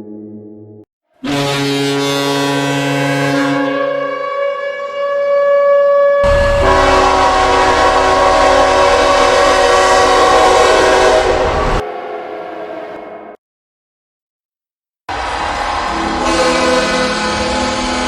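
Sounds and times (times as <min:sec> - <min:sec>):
loud multi-tone horn blast: 0:01.2 - 0:13.0, 0:15.1 - 0:18.0
chord of horn tones: 0:06.2 - 0:11.8
rumbling noise: 0:06.2 - 0:11.8.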